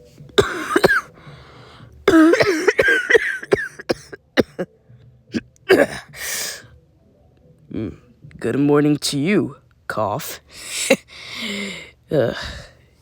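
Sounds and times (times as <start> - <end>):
person coughing: 0.4 - 1.1, 2.1 - 4.7, 5.7 - 6.6
throat clearing: 5.7 - 6.1.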